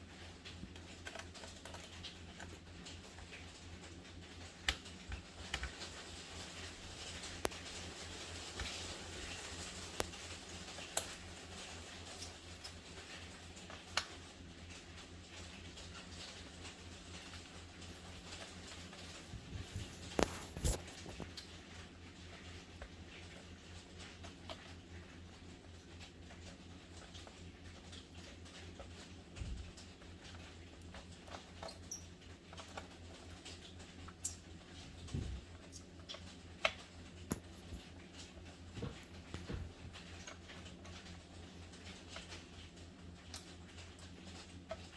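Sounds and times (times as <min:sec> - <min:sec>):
faint steady hum: 0:00.0 - 0:44.9
faint scratching and handling: 0:15.6 - 0:24.6, 0:34.7 - 0:42.6.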